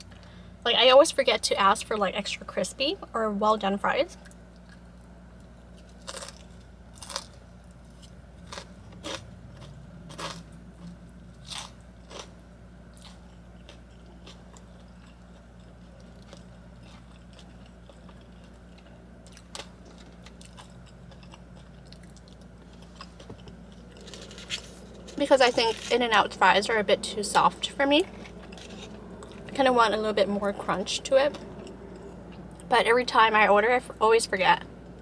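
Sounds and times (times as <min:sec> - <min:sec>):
low steady hum: 0:00.0 - 0:35.0
person biting and chewing crunchily: 0:04.3 - 0:26.0, 0:28.0 - 0:29.5.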